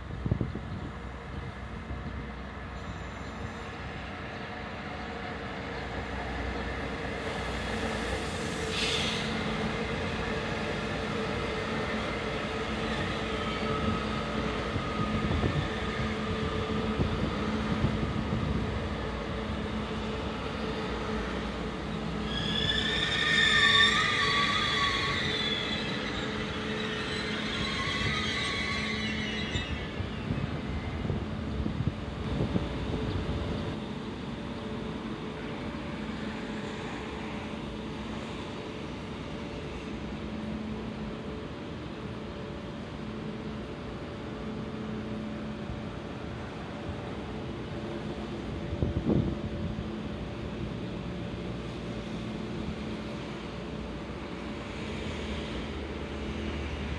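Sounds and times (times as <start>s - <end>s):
train mechanical hum: 0.0s - 56.9s
wheel squeals: 22.3s - 30.0s.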